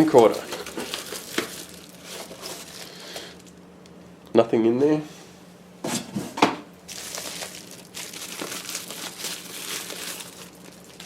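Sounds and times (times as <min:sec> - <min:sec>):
packaging crinkling and rustling: 0:00.0 - 0:03.6, 0:06.9 - 0:11.0.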